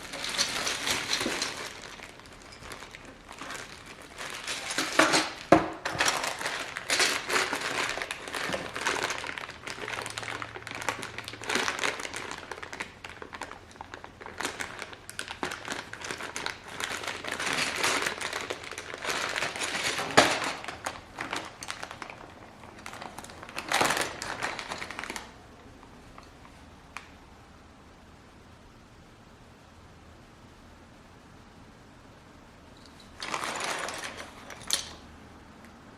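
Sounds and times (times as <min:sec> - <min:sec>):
clicks and clatter: 0:00.0 - 0:10.2
plastic packaging crinkling: 0:00.0 - 0:26.5, 0:32.9 - 0:35.1.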